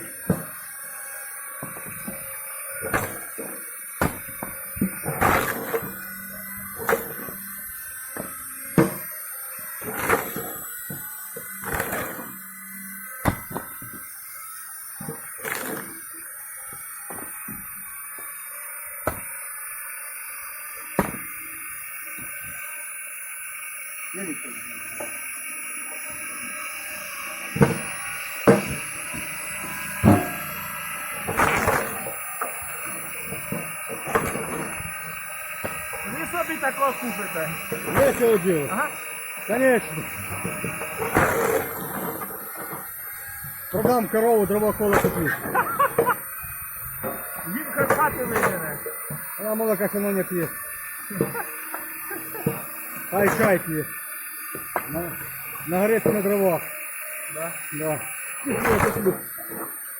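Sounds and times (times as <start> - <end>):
steady high whine: 0.0 - 59.9
firewood splitting knocks and cracks: 1.6 - 6.0, 6.8 - 7.4, 8.1 - 9.1, 9.8 - 12.4, 13.2 - 14.0, 15.0 - 16.0, 19.0 - 19.5, 20.9 - 21.5, 30.0 - 30.5, 31.1 - 36.5, 39.6 - 43.0, 58.5 - 59.1
wood being struck: 1.6 - 9.2, 9.8 - 12.4, 13.2 - 14.0, 19.0 - 19.6, 20.8 - 22.6, 27.5 - 49.4
split wood clattering: 6.8 - 7.3, 31.3 - 36.4.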